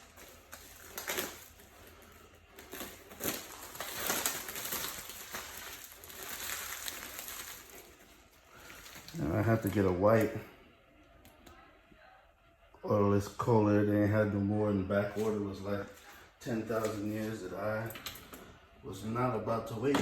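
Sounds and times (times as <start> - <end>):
crinkling rustling: 0.0 - 10.5, 15.1 - 18.5.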